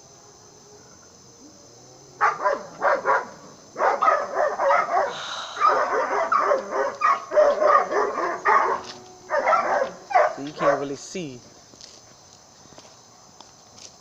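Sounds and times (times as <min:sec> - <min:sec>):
dogs fighting and barking: 0:02.1 - 0:10.8.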